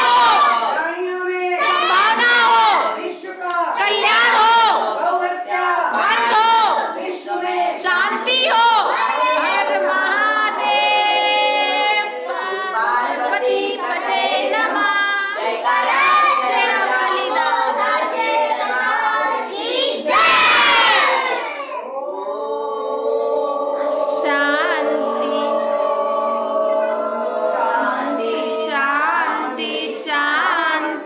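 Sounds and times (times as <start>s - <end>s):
loud shout: 0.0s - 0.9s, 1.5s - 3.0s, 18.7s - 21.9s
voices singing a devotional prayer: 0.0s - 31.0s.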